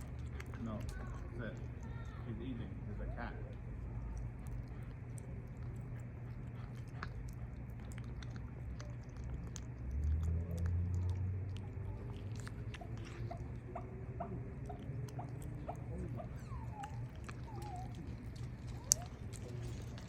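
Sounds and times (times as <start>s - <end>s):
cat chewing and crunching food: 0.0s - 20.0s.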